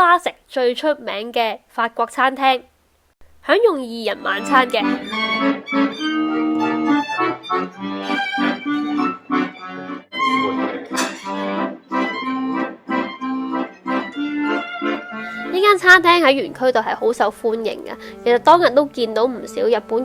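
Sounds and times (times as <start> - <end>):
instrumental melody over held low notes: 4.1 - 20.0.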